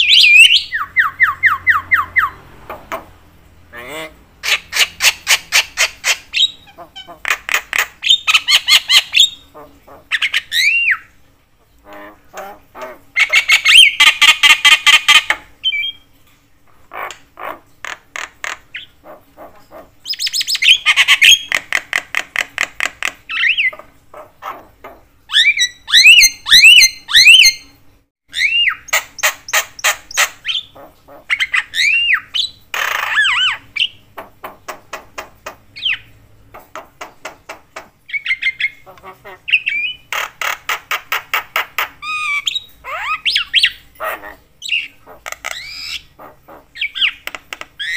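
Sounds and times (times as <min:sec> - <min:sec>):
myna rattling and clicking calls: 0:11.8 - 0:15.5, 0:16.9 - 0:27.4, 0:36.6 - 0:47.9.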